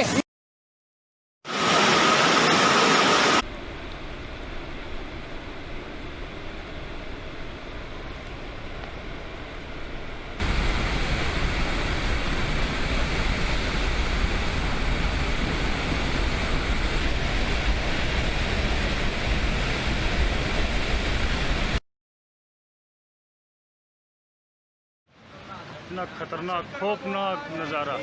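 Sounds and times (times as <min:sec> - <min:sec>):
rushing floodwater rumble: 0:01.5 - 0:21.8.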